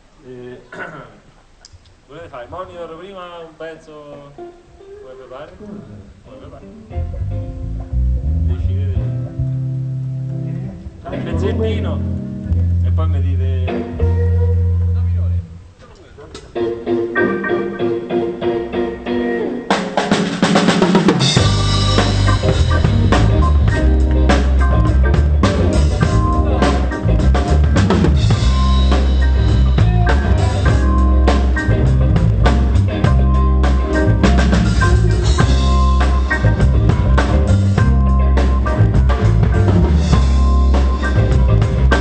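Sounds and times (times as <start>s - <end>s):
live pop band playing: 6.9s - 15.6s, 16.2s - 42.0s
drum fill: 19.7s - 42.0s.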